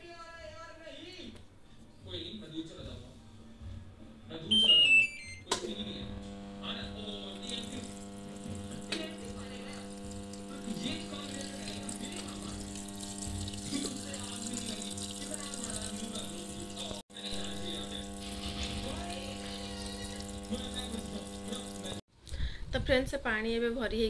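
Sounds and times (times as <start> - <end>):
washing machine filling with water: 6.7 - 22.0.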